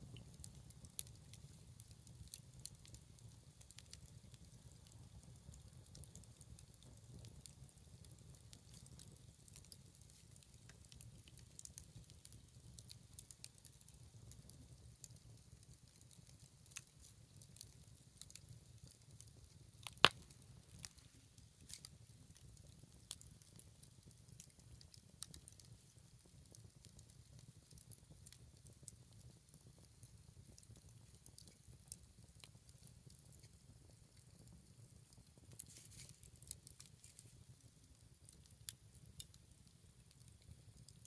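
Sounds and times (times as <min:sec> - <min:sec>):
bonfire crackling: 0:00.0 - 0:41.0
loud pop from fire: 0:19.8 - 0:20.4.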